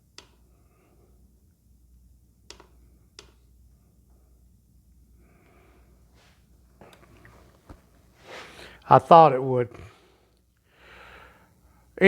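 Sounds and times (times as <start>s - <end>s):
steady low hum: 0.0s - 12.0s
sharp clicks: 2.5s - 3.4s.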